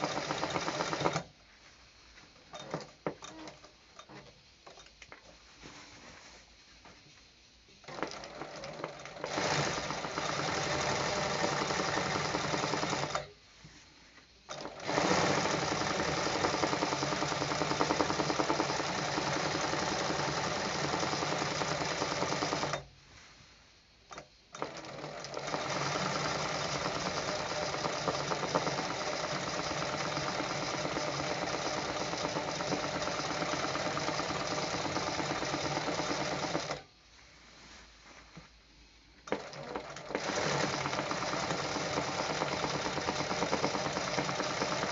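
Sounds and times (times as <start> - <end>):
sewing machine stitching: 0.0 - 1.3, 7.8 - 13.4, 14.5 - 22.9, 24.1 - 36.9, 39.2 - 44.9.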